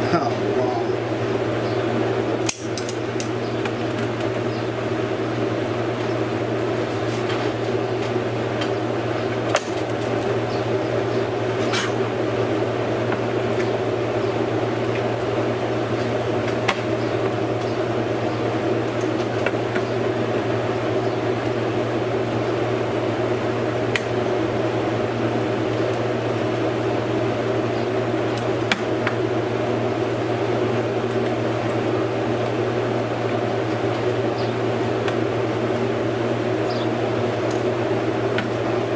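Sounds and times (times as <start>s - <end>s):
steady machine hum: 0.0s - 38.9s
hand tools clicking on metal: 2.4s - 3.4s.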